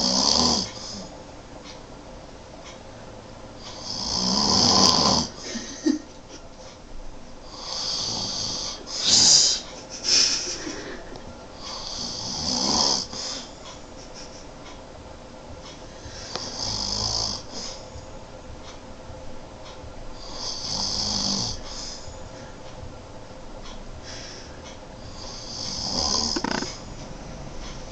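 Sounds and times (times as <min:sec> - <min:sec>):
man snoring: 0:00.0 - 0:01.1, 0:03.7 - 0:05.5, 0:07.4 - 0:09.6, 0:11.6 - 0:13.5, 0:15.9 - 0:17.8, 0:20.2 - 0:22.1, 0:25.0 - 0:26.8.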